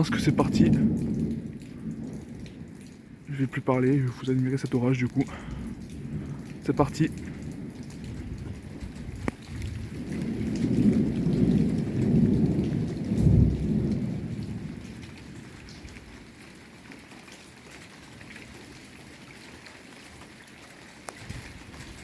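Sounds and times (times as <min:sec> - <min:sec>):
rolling thunder: 0:00.0 - 0:16.4
steady rain: 0:00.0 - 0:22.0.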